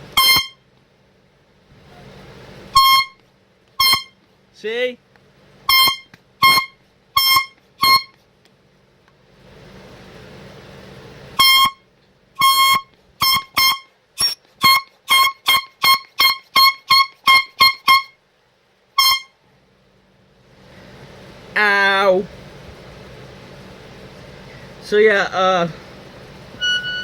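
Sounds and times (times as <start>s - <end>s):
air horn toots: 0.1s - 0.6s, 2.7s - 3.2s, 3.8s - 4.2s, 5.6s - 8.2s, 11.4s - 11.8s, 12.4s - 18.2s, 18.9s - 19.4s, 26.6s - 27.0s.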